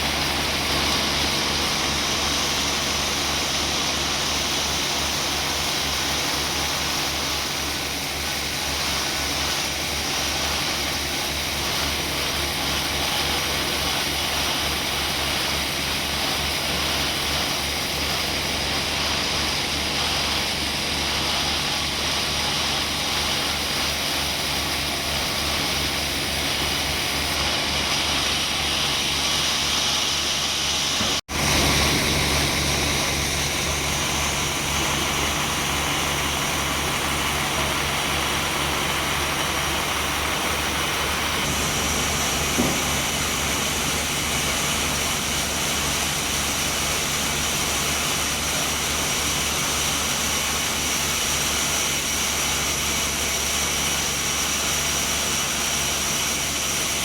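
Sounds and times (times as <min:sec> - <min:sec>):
saw hissing: 0:00.0 - 0:57.0
motor drone: 0:25.2 - 0:54.4.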